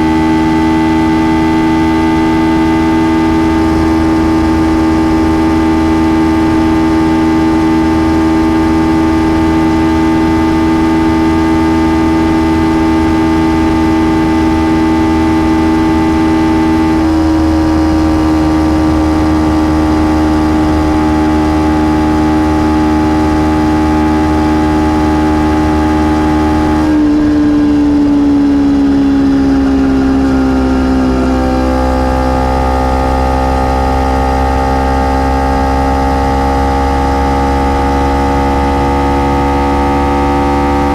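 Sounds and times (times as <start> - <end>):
wind rush: 0.0 - 32.1
motorcycle engine running: 0.0 - 40.9.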